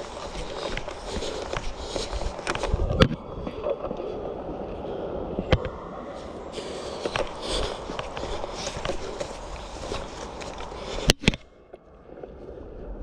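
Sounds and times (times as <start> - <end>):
footsteps through grass and brush: 0.0 - 3.0, 6.1 - 11.2
clothing and gear rustling: 0.0 - 4.2, 6.1 - 11.4.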